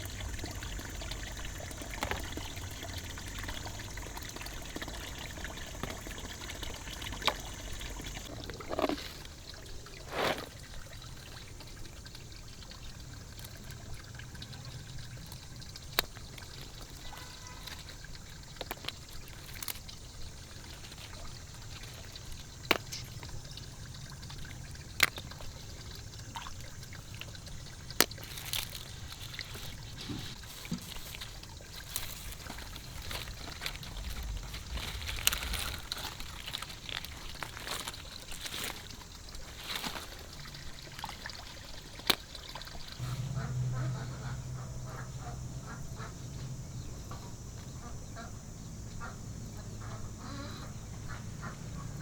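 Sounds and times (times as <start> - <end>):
water pouring and trickling: 0.0 - 48.2
low hum: 32.4 - 37.6, 42.9 - 49.0.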